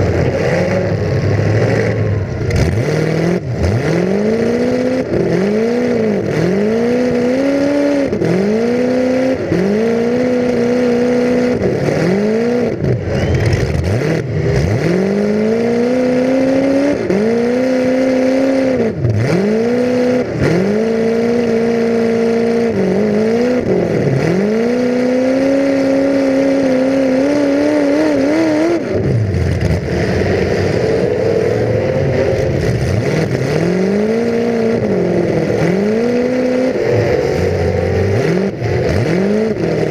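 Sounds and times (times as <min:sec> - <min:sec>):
car engine revving hard: 0:00.0 - 0:39.9.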